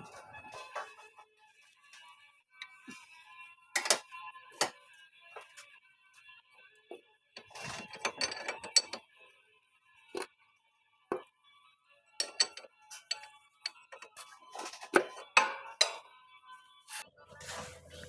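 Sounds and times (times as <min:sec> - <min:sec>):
metallic clinks of tools: 0:12.2 - 0:13.8.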